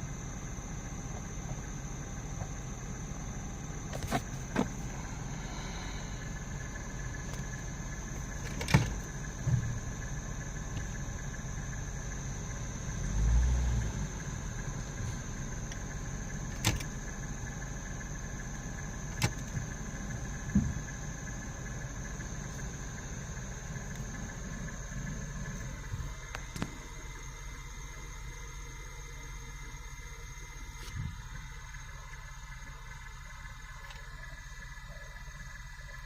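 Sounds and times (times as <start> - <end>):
car engine idling: 0.0 - 36.0
low engine thump: 3.8 - 6.3, 8.2 - 10.0, 19.1 - 21.1, 30.8 - 31.4
sharp engine knocks: 8.3 - 10.0, 19.1 - 21.0.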